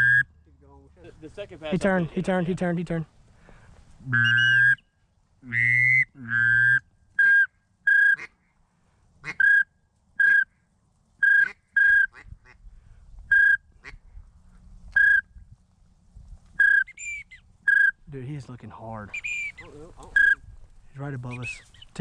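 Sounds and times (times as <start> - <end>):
high whistled peeps: 0.0 - 0.3, 4.1 - 4.9, 5.6 - 8.2, 9.3 - 10.5, 11.2 - 12.2, 13.3 - 13.7, 14.9 - 15.3, 16.6 - 18.1, 19.1 - 20.5, 21.2 - 22.0
duck call honking quacks: 4.1 - 4.8, 5.4 - 8.4, 9.2 - 10.5, 11.2 - 12.6.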